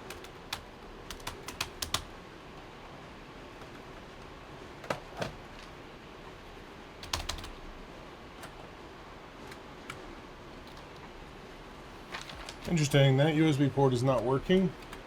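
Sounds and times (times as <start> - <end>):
computer keyboard key presses: 0.0 - 2.1, 7.0 - 7.6
steady low hiss: 0.0 - 15.0.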